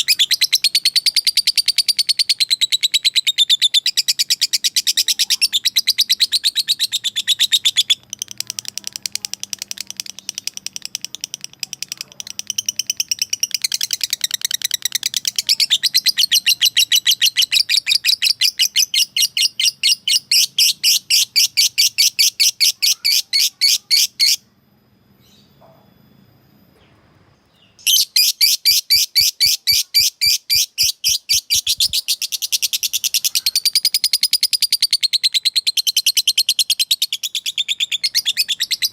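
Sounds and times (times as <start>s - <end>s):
lovebird shrill chirps: 0.0s - 24.5s, 27.6s - 38.9s.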